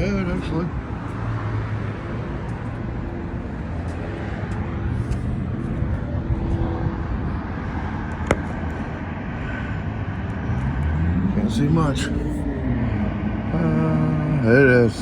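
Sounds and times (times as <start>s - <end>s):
road traffic rumble: 0.0s - 15.0s.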